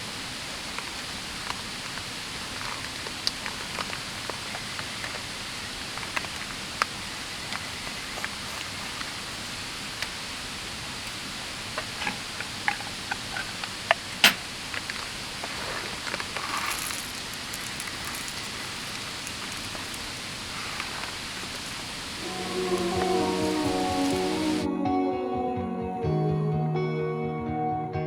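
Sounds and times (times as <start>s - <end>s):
river rushing: 0.0s - 24.7s
soft music: 22.2s - 28.0s.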